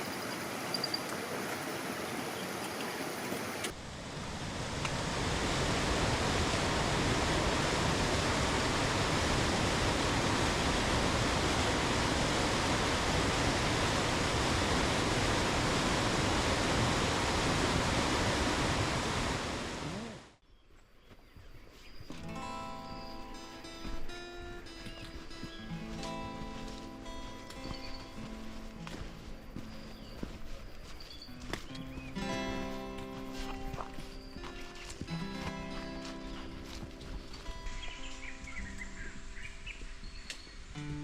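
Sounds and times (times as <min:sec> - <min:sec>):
fast-flowing water rushing: 0:00.0 - 0:20.4
faint guitar music: 0:22.1 - 0:40.0, 0:40.7 - 0:41.0.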